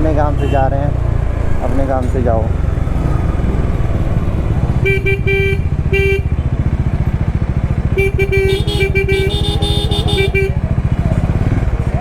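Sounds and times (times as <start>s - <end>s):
motorcycle engine thrumming: 0.0s - 12.0s
vehicle horns honking: 0.2s - 0.8s, 4.7s - 11.4s.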